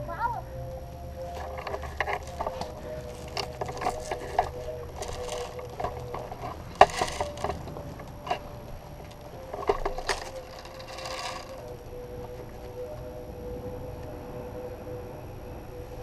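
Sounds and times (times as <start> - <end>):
rustling: 0.8 - 13.2.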